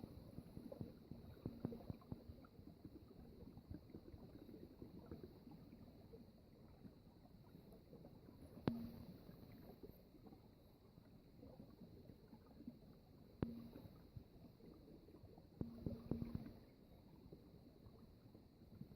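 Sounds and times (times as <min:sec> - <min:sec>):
water trickling faintly: 0:00.0 - 0:18.9
drops plunking into water: 0:08.6 - 0:09.2, 0:13.4 - 0:14.1, 0:15.6 - 0:16.7.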